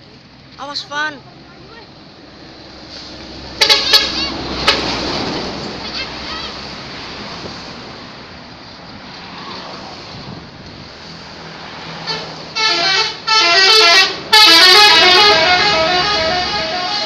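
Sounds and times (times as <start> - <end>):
traffic noise: 0.0 - 17.0
vehicle engine: 0.0 - 17.0
multi-tone musical bus horn: 3.5 - 5.1, 12.0 - 17.0.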